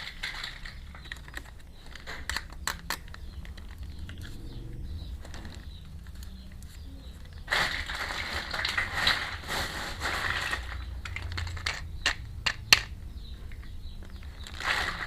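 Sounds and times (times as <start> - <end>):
plastic packaging crinkling: 0.0 - 4.4, 5.2 - 12.1, 14.4 - 15.0
plastic toy pieces clicking: 0.0 - 4.5, 10.0 - 13.0.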